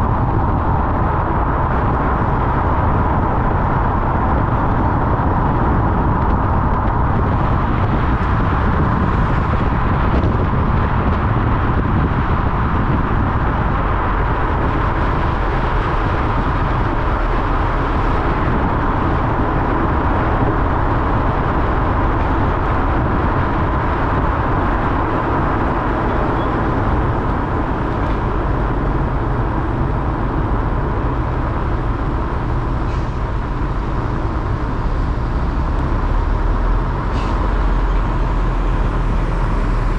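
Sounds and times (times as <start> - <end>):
road noise: 0.0 - 39.9.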